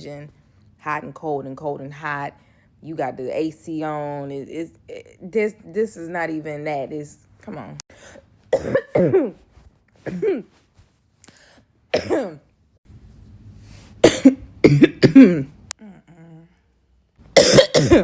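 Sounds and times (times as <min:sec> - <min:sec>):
woman clearing her throat: 0:08.5 - 0:09.4, 0:10.0 - 0:10.5, 0:12.0 - 0:12.4, 0:14.0 - 0:16.4, 0:17.4 - 0:18.0
woman coughing: 0:08.5 - 0:09.4, 0:10.0 - 0:10.6, 0:11.9 - 0:12.5, 0:14.0 - 0:15.6, 0:17.4 - 0:18.0.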